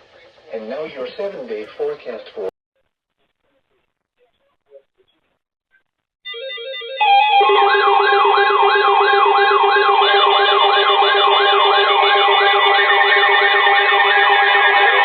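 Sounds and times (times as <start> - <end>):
electronic siren yelping: 6.3 - 15.0
steady held tones: 7.4 - 15.0.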